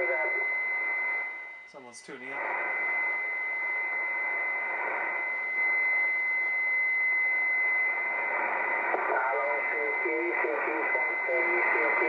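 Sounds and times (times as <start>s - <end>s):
radio band hiss: 0.0s - 6.2s, 7.6s - 12.0s
steady high whistle: 2.4s - 9.5s.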